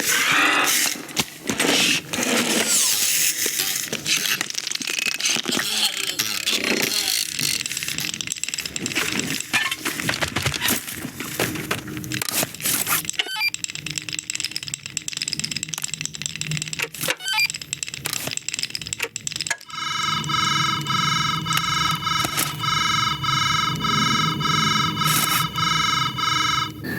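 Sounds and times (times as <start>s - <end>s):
clicks scrapes and crinkling: 0.0s - 19.6s
pulsing electronic buzz: 19.6s - 26.9s.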